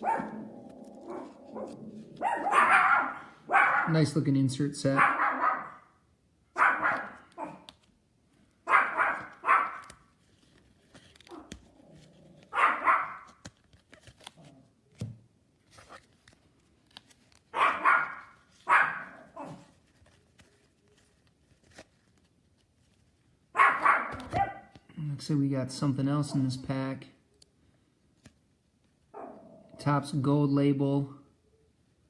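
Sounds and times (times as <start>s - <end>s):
dog barking: 0.0s - 0.4s, 1.0s - 4.0s, 5.0s - 5.9s, 6.6s - 7.7s, 8.6s - 9.8s, 12.5s - 13.3s, 17.6s - 19.7s, 23.6s - 24.7s, 29.2s - 29.4s.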